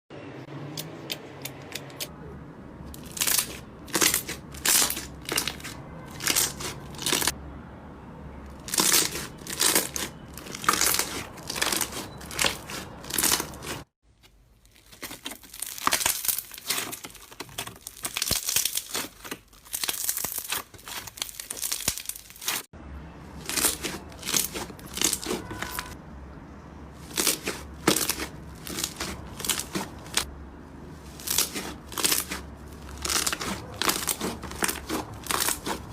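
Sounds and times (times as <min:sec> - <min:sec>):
slime popping and crackling: 0:02.9 - 0:07.3, 0:08.6 - 0:13.9, 0:14.6 - 0:22.7, 0:23.4 - 0:26.0, 0:27.0 - 0:30.3, 0:31.0 - 0:35.9.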